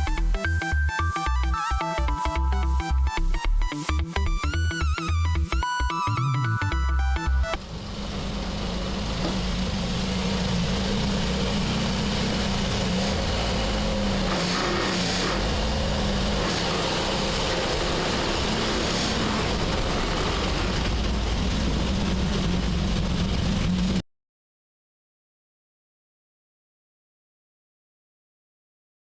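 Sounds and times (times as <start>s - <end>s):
car engine running: 7.0s - 24.0s.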